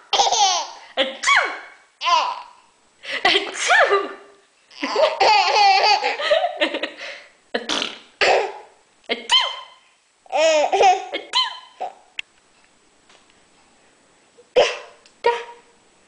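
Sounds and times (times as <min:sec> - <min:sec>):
baby laughing and squealing: 0:00.1 - 0:02.6, 0:04.7 - 0:06.3, 0:09.3 - 0:12.1.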